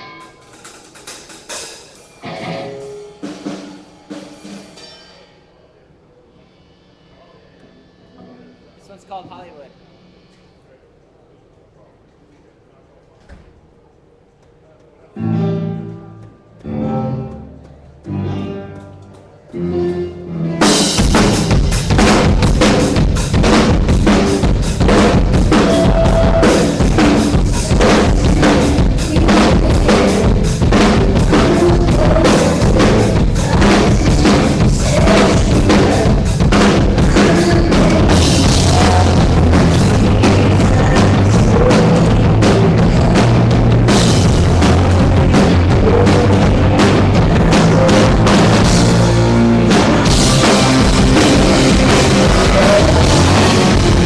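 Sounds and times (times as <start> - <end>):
live rock band playing: 0.0 - 5.4, 15.2 - 54.0
bass drum and snare: 21.0 - 54.0.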